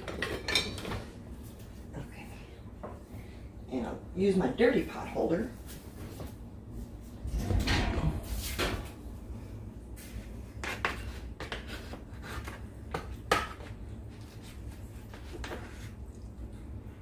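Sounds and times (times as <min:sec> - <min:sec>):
pans and dishes clattering: 0:00.0 - 0:01.1.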